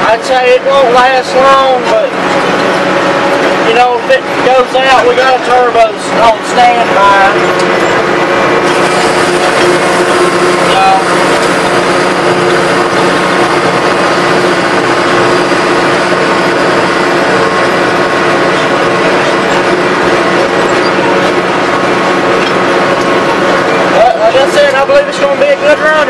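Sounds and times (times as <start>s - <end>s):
mechanical whine: 0.0s - 26.0s
tractor diesel engine running: 0.0s - 26.0s.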